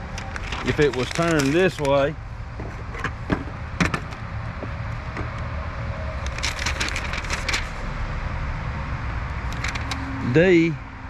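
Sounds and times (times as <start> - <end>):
loose parts clicking and rattling: 0.0 - 5.4, 9.5 - 10.0.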